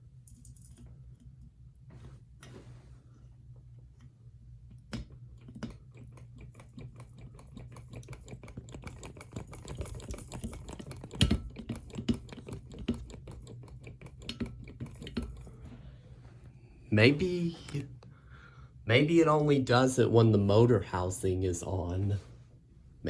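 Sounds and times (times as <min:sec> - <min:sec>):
steady low hum: 0:00.0 - 0:23.0
light clicking and tapping of parts: 0:03.6 - 0:16.0.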